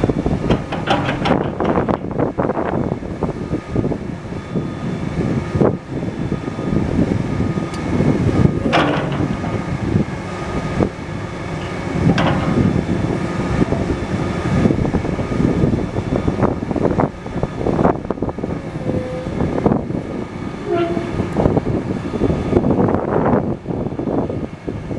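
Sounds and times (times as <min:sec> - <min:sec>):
heavy diesel engine running: 0:00.0 - 0:24.9
short metal knocks: 0:00.5 - 0:02.1, 0:08.6 - 0:09.6, 0:11.6 - 0:12.7.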